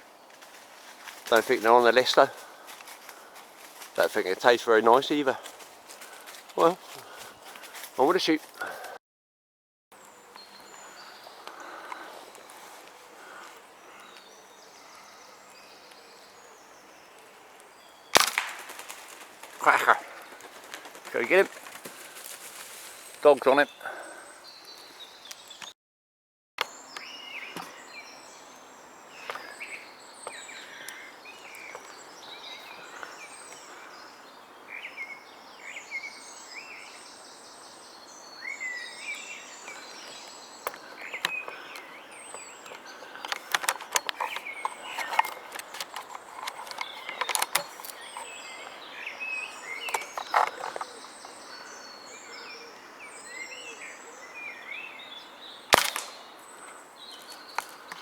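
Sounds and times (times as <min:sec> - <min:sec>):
small birds chirping: 0:00.0 - 0:09.0, 0:10.0 - 0:25.8, 0:26.6 - 0:58.0
sharp crack: 0:18.1 - 0:20.0, 0:55.7 - 0:56.3.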